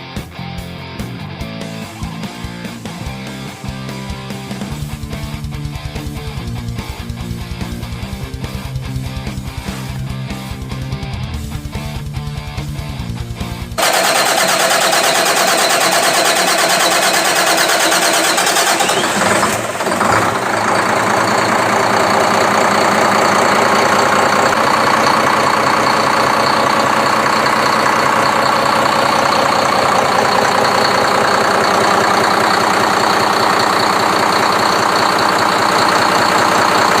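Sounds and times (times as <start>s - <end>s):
speedboat engine running: 13.8s - 37.0s.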